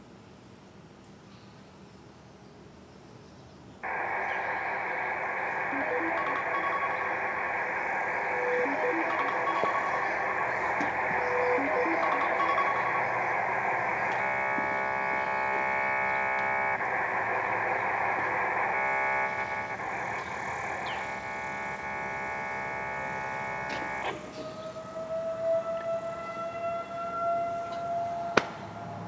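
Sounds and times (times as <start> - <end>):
steady layered tones: 3.8 - 24.2
warning siren winding up: 3.8 - 28.4.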